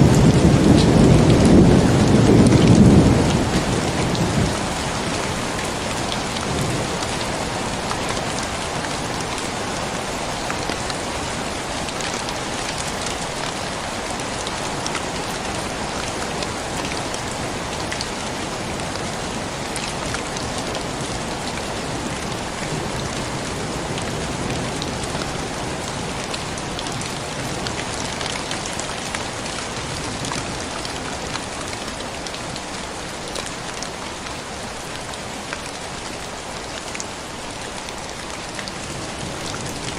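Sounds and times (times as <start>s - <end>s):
thunder rumble: 0.0s - 4.8s
steady rain falling: 0.0s - 39.9s.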